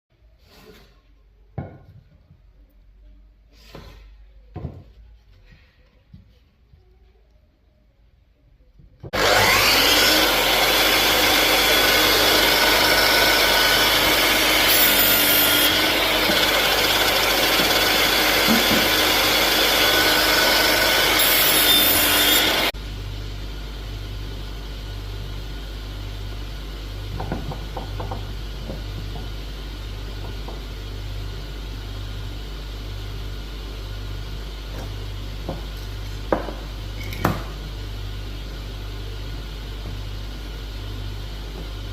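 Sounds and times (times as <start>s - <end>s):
power saw cutting wood: 9.1s - 22.8s.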